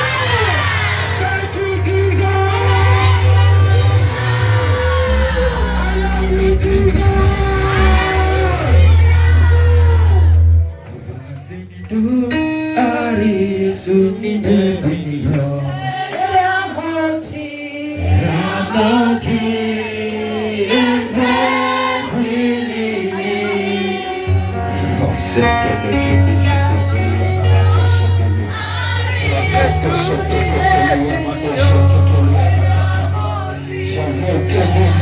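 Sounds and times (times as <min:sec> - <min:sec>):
group singing gospel song: 0:00.0 - 0:10.7, 0:13.0 - 0:25.4, 0:26.1 - 0:35.0
band accompaniment: 0:00.0 - 0:11.3, 0:23.2 - 0:35.0.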